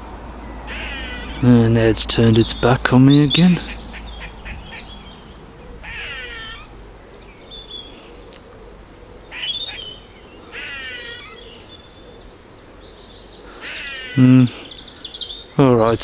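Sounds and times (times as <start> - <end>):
squirrel squeaky calls: 0.0 - 5.1, 5.7 - 6.9, 9.2 - 11.7, 13.4 - 15.6.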